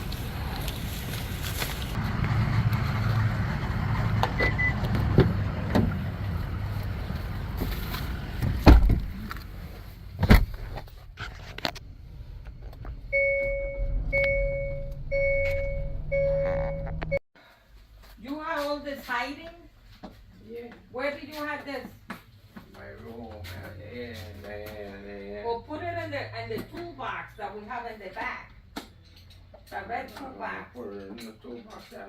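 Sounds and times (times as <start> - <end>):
car engine rumbling: 0.0 - 17.2
car warning chime beeping: 4.4 - 4.8, 13.1 - 17.2.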